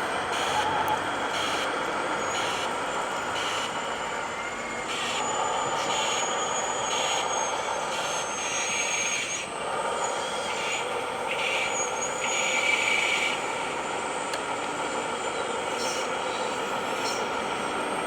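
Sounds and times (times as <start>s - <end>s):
small motors whining: 0.2s - 18.0s.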